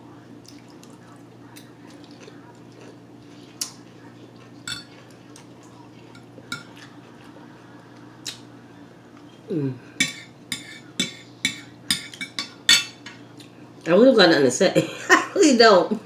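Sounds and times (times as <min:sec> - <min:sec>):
cutlery clinking on a plate: 0:04.6 - 0:05.0, 0:06.1 - 0:06.9, 0:10.0 - 0:13.2.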